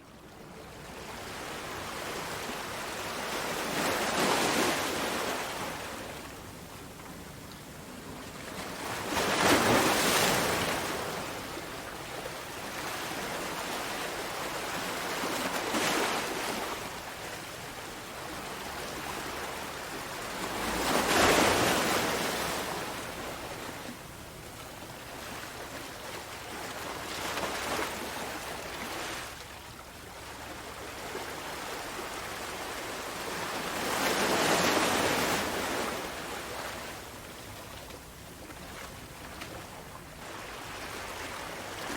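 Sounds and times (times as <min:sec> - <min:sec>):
ocean waves breaking: 0:18.4 - 0:24.0.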